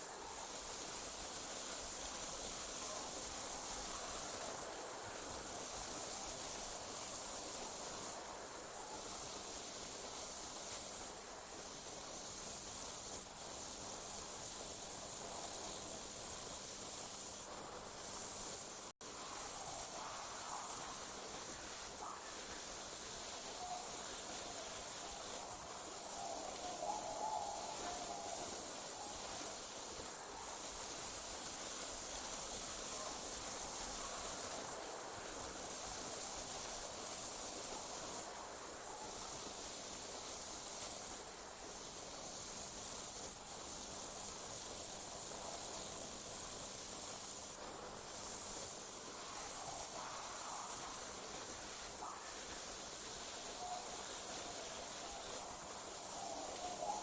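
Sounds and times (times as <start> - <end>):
crickets trilling: 11.6 - 57.0.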